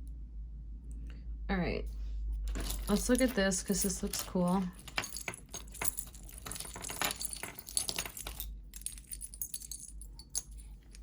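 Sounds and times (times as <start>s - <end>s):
metal jewelry clinking: 2.5s - 11.0s.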